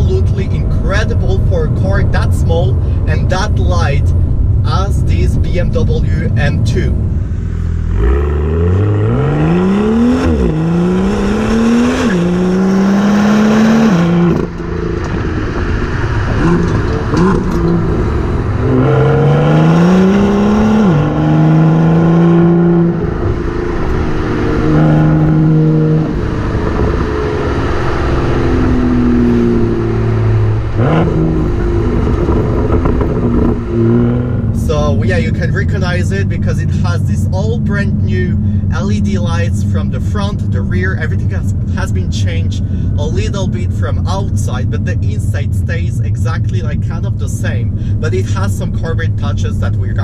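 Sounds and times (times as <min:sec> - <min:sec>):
car engine accelerating: 0:00.0 - 0:50.0.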